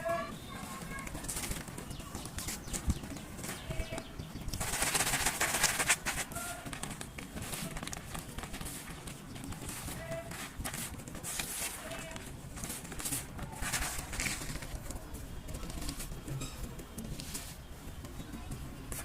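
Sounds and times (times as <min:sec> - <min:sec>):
chalk crushed crunching: 0:02.2 - 0:14.9.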